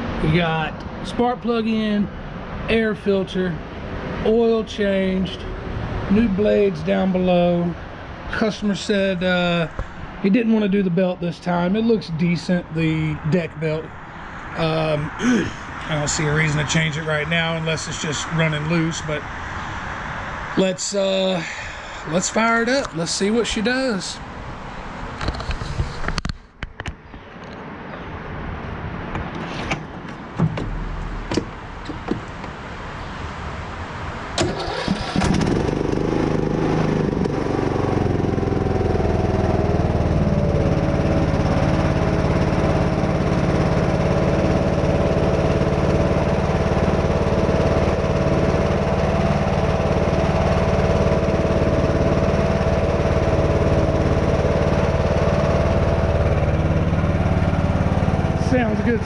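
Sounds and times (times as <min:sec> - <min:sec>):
mower engine starting and running: 0:00.0 - 0:10.8, 0:11.6 - 0:19.9, 0:34.4 - 0:59.0
clicks and knocks: 0:29.1 - 0:32.6.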